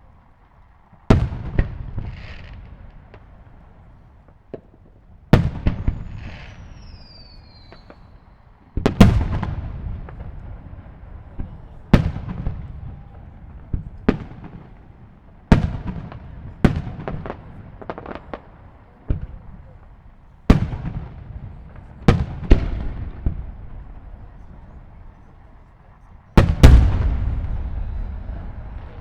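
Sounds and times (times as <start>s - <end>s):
firework shells booming: 26.4s - 29.0s.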